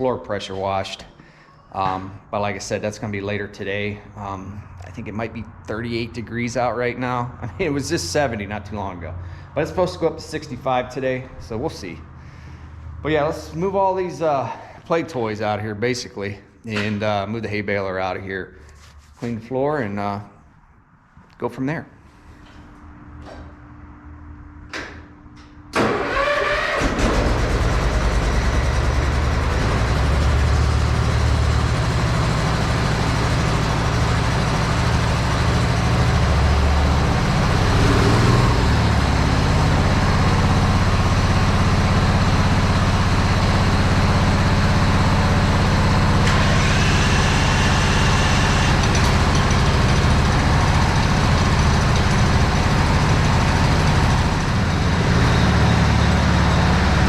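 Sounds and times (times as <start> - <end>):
engine cranking and idling: 25.4 - 57.0.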